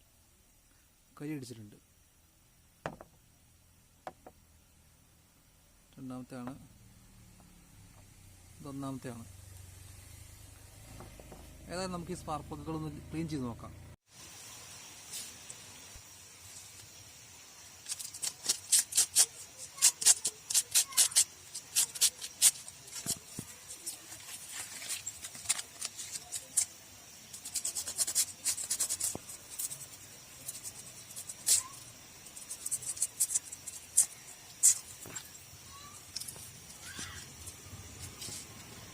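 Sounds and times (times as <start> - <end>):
spark plug being scraped: 17.8 - 38.5.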